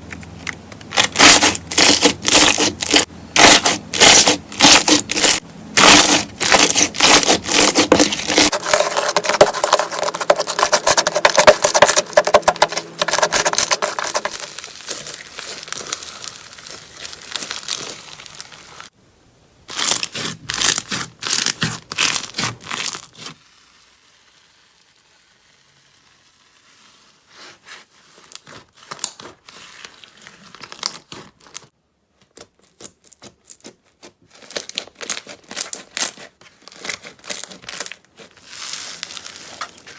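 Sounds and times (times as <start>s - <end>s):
slime crackling and popping: 0.8s - 9.4s, 10.4s - 18.9s.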